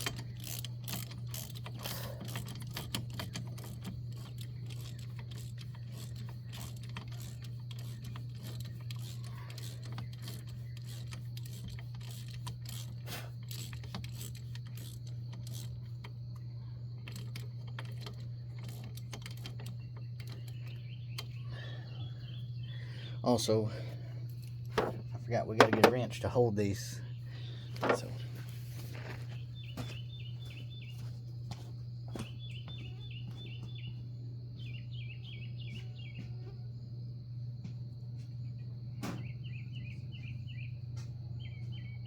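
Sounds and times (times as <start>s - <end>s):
hand ratchet clicking: 0.0s - 16.2s, 17.0s - 20.6s
steady low hum: 0.0s - 42.0s.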